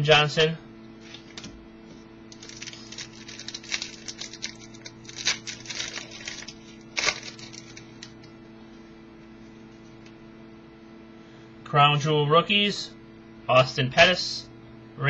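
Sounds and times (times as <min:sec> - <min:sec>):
electrical hum: 0:00.0 - 0:15.0
cards and wrapper rustling: 0:02.3 - 0:08.3.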